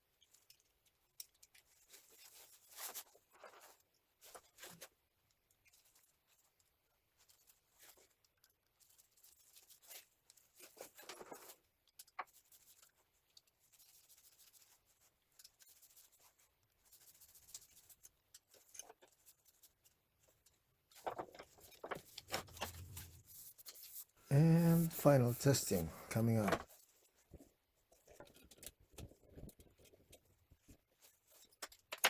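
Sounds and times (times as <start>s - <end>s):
small parts clicking and rubbing: 31.0s - 32.0s.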